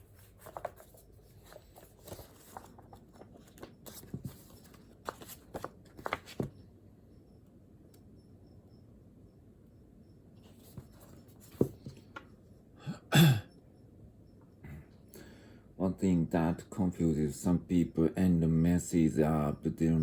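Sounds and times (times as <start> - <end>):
paper rustling: 0.0 - 6.5.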